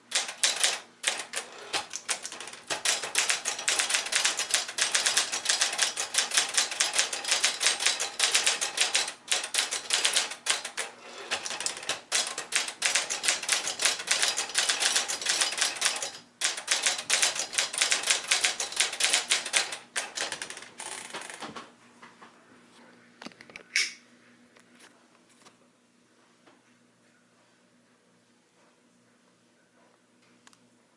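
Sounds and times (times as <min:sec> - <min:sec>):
typewriter typing: 0:00.0 - 0:21.6.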